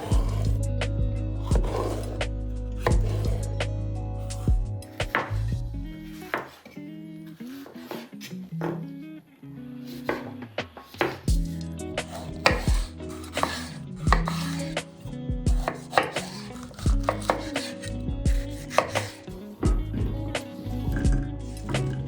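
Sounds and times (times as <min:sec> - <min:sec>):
soft background music: 0:00.0 - 0:22.0
knife chopping on cutting board: 0:01.5 - 0:02.2, 0:02.8 - 0:03.5, 0:05.0 - 0:05.4, 0:06.2 - 0:06.7, 0:07.4 - 0:08.8, 0:11.0 - 0:11.4, 0:12.0 - 0:14.8, 0:15.5 - 0:19.2.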